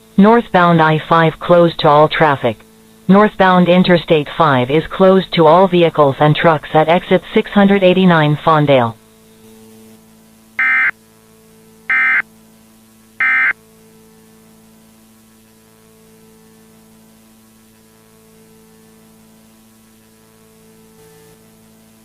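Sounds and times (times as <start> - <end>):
faint steady hum: 0.0 - 22.0
digital data tone bursts: 10.6 - 10.9, 11.9 - 12.2, 13.2 - 13.6.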